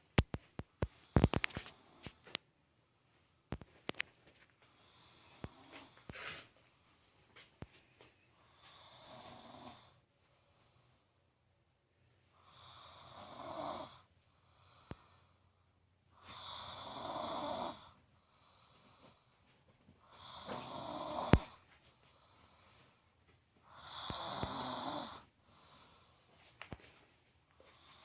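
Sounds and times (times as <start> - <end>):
person snoring: 8.6 - 10.0, 12.4 - 15.2, 16.2 - 18.6, 20.0 - 21.6, 23.7 - 26.1.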